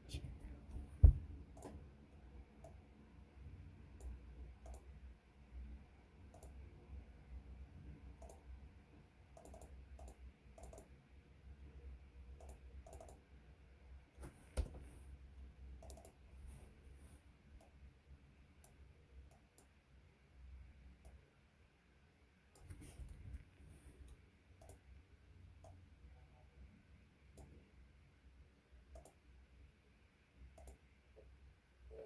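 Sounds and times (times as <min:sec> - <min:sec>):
low steady hum: 0:00.0 - 0:32.0
small clicks and light taps: 0:28.9 - 0:29.2, 0:30.5 - 0:31.3.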